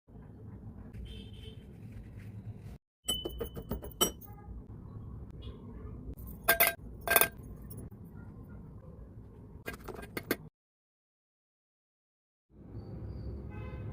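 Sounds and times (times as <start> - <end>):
utensils clinking on cookware: 3.1 - 4.3, 6.2 - 7.8.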